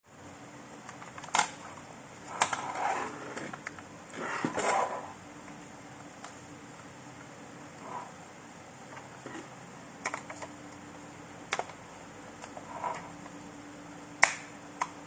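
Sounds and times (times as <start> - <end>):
scraping and rustling: 1.1 - 5.2, 7.8 - 8.2, 12.6 - 13.3.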